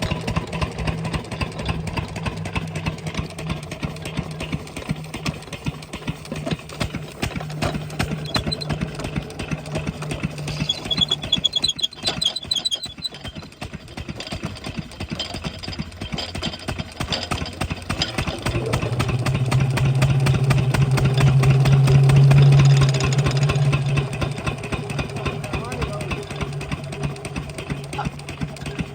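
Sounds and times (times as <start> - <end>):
diesel pump engine running: 0.0 - 28.9
high chirping: 10.5 - 13.0.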